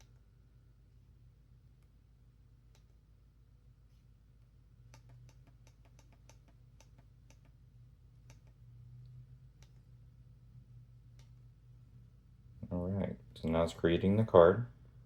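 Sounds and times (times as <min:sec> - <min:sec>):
low steady hum: 0:00.0 - 0:15.0
faint small clicks: 0:02.7 - 0:03.0, 0:04.9 - 0:07.6, 0:08.2 - 0:09.9, 0:11.1 - 0:11.4.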